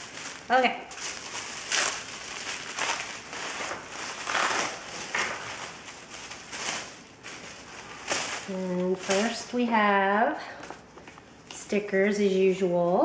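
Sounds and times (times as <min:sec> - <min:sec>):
packaging crinkling and rustling: 0:00.0 - 0:11.4.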